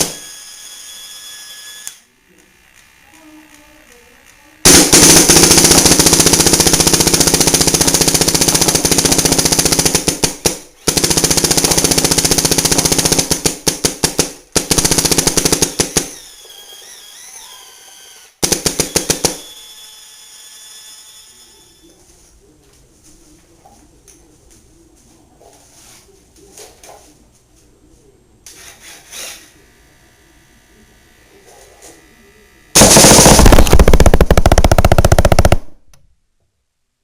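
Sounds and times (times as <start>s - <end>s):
paintball marker rapid firing: 4.7s - 16.2s, 18.4s - 19.5s, 32.8s - 35.9s.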